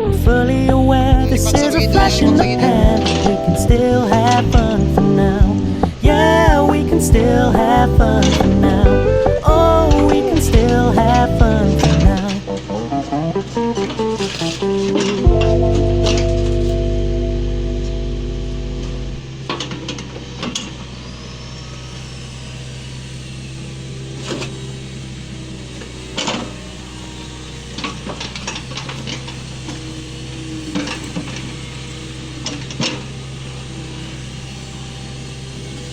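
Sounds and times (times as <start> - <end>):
excavator engine running: 0.0 - 35.9.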